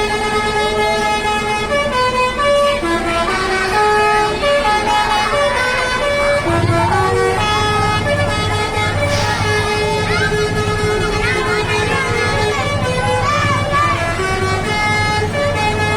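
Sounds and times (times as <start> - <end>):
bus horns playing melody: 0.0 - 15.9
low rumble: 6.4 - 15.8.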